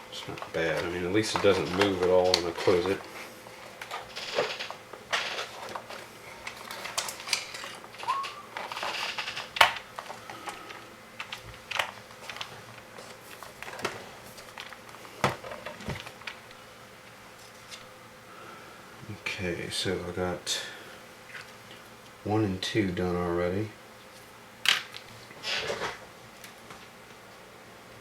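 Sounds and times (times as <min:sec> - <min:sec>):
plastic parts clicking and tapping: 0:00.3 - 0:03.1.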